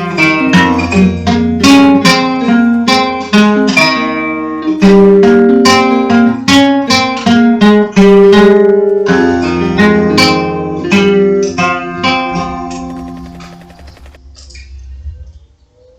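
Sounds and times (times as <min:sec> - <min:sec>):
acoustic guitar picking: 0:00.0 - 0:12.7.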